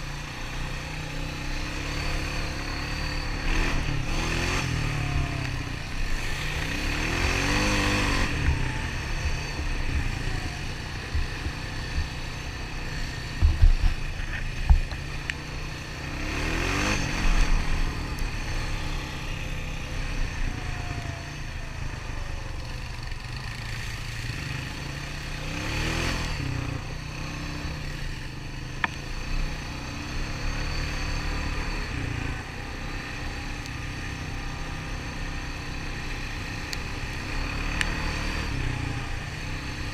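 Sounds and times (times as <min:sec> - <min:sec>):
atv engine accelerating: 0:00.0 - 0:39.9
sharp low thumps: 0:07.1 - 0:12.7, 0:13.3 - 0:15.2.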